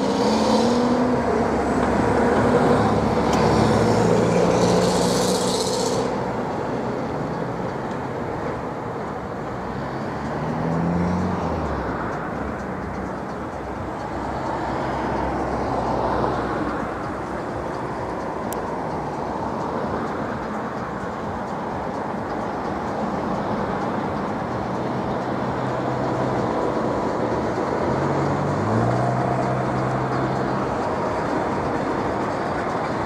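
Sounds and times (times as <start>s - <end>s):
industrial plant drone: 11.4s - 33.0s.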